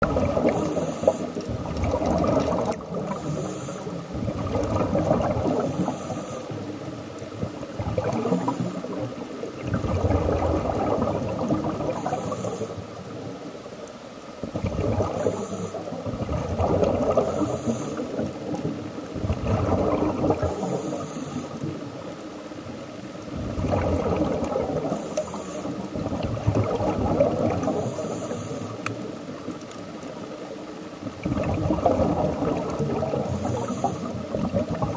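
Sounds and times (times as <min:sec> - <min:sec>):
exhaled bubbles rushing: 0:00.0 - 0:13.3, 0:14.4 - 0:22.1, 0:23.2 - 0:28.3, 0:31.0 - 0:34.9
regulator inhale hiss: 0:00.5 - 0:01.5, 0:03.0 - 0:04.2, 0:05.6 - 0:06.6, 0:11.9 - 0:13.0, 0:15.1 - 0:16.0, 0:17.2 - 0:18.3, 0:20.5 - 0:21.8, 0:24.9 - 0:25.9, 0:27.6 - 0:29.0, 0:33.2 - 0:34.3.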